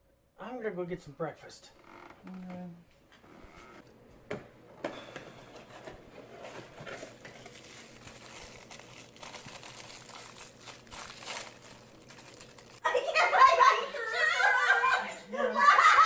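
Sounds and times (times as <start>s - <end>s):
rustling and crinkling: 5.5s - 12.8s.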